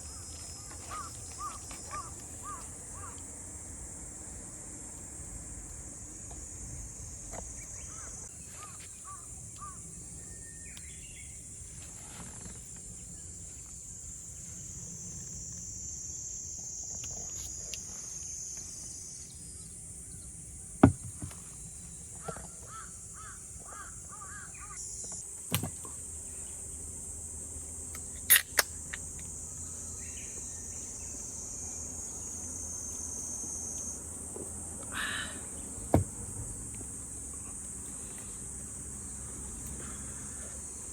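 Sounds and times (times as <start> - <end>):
bird calls: 0.0 - 3.3, 7.5 - 11.4, 22.1 - 24.8
high-pitched insect chorus: 0.0 - 40.9
sharp clicks or pops: 28.3 - 29.0.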